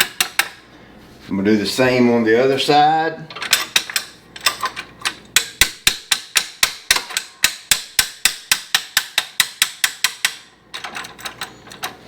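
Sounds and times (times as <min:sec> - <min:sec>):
hammer tapping metal bracket: 0:03.4 - 0:10.5.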